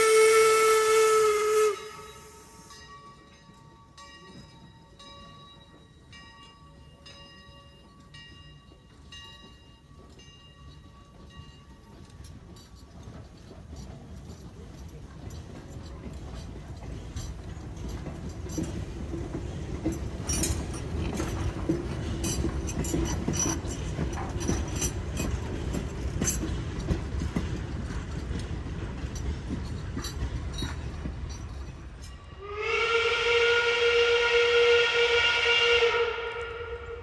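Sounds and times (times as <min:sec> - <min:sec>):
steam whistle blowing: 0:00.0 - 0:02.7, 0:32.4 - 0:37.0
steam train rumble: 0:00.0 - 0:06.3, 0:08.1 - 0:37.0
wheels clicking on rails: 0:07.9 - 0:32.4.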